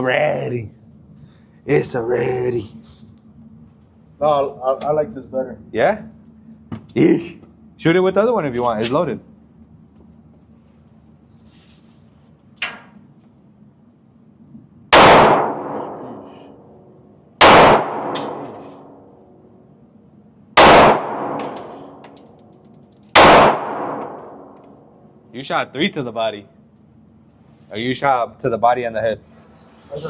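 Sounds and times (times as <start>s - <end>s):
pistol shots: 14.9s - 16.0s, 17.4s - 18.6s, 20.6s - 22.0s, 23.1s - 24.6s.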